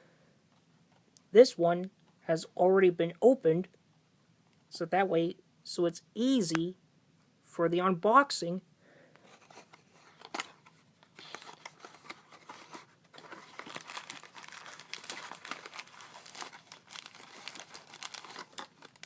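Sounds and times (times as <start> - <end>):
packaging crinkling and rustling: 9.3 - 19.0.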